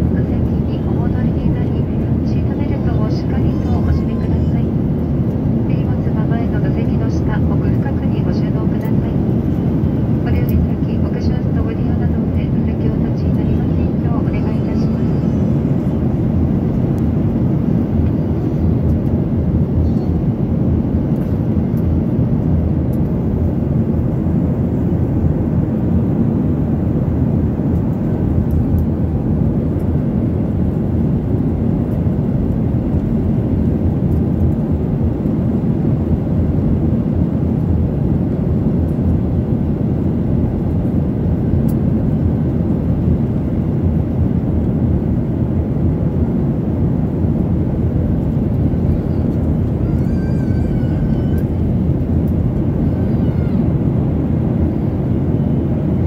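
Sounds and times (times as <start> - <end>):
airliner cabin rumble: 0.0 - 56.0.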